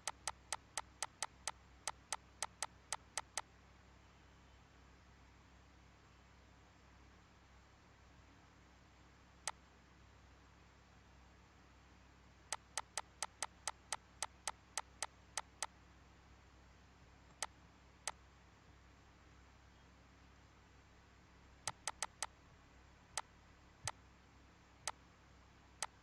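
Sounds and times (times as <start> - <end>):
sharp clicks: 0.0 - 3.5, 12.5 - 15.7, 17.3 - 17.5, 21.7 - 22.3, 25.8 - 26.0
faint steady hum: 0.0 - 26.0.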